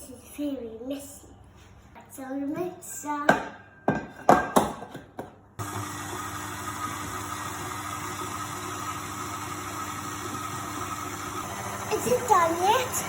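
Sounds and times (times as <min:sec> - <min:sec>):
electric mixer running: 0:05.6 - 0:13.0.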